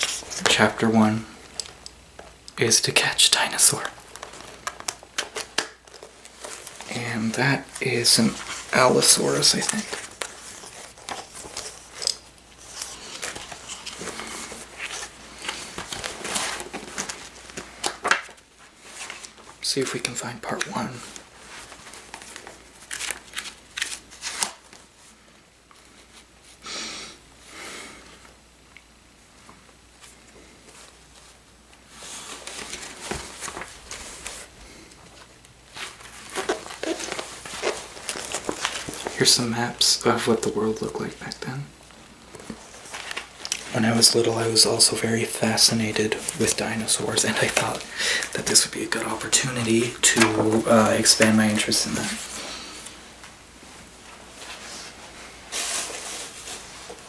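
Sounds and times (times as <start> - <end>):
book pages rustling: 0.0 - 26.6, 29.5 - 57.0.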